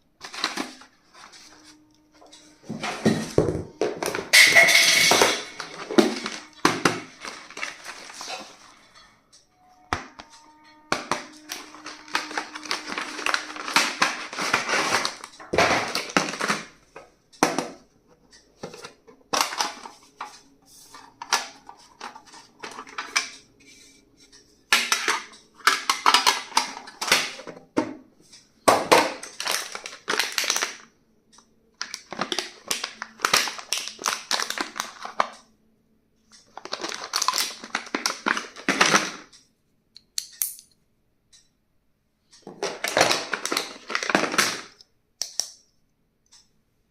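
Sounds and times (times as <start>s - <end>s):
plastic packaging crinkling: 0.2s - 1.8s, 4.0s - 8.7s, 10.9s - 16.8s, 29.0s - 30.9s, 31.8s - 35.4s, 36.4s - 39.3s, 42.5s - 44.8s.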